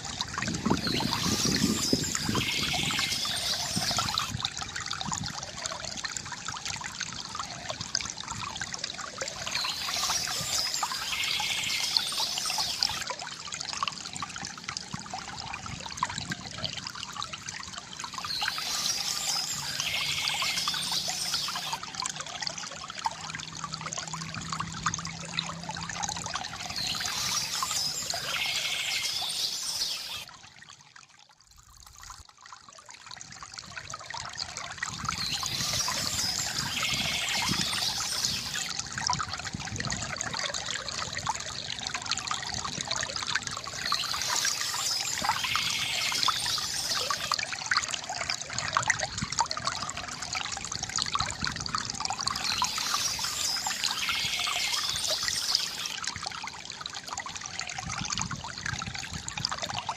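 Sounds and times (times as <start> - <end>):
river water gurgling: 0.0 - 59.9
songbird singing: 0.6 - 4.3, 9.4 - 13.0, 18.1 - 21.8, 26.4 - 30.3, 35.1 - 38.7, 43.7 - 47.3, 52.3 - 56.0.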